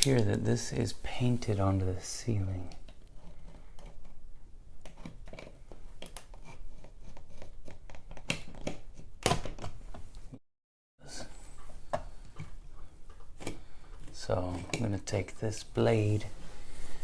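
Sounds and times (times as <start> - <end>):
small clicks taps and scrapes: 4.8 - 9.0.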